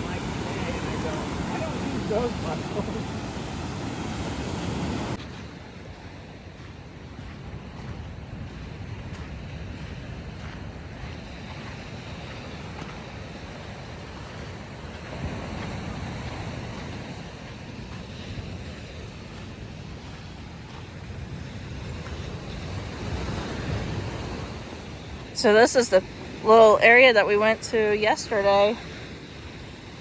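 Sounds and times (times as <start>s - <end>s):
ocean surf washing on beach: 0.0s - 30.0s
wind buffeting microphone: 0.0s - 30.0s.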